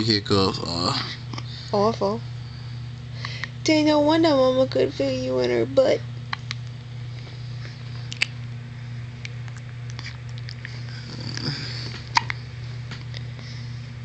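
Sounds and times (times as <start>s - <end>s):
steady low hum: 0.0s - 14.0s
baby hiccuping: 12.1s - 12.4s.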